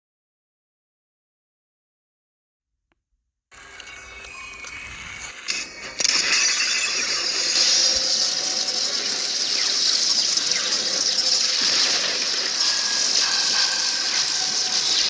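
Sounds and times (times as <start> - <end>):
hiss with shimmering whine: 3.6 - 15.0.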